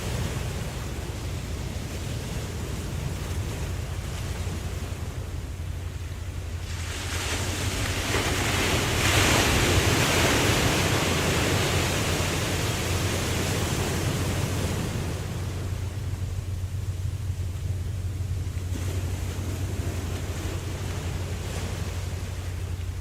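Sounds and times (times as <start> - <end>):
low rumble of surf: 0.0 - 23.0.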